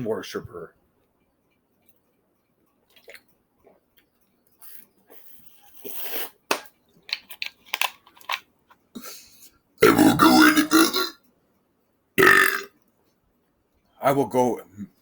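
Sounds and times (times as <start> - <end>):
wet mouth clicks: 2.9 - 4.1
person swallowing: 9.8 - 11.2, 12.2 - 12.7.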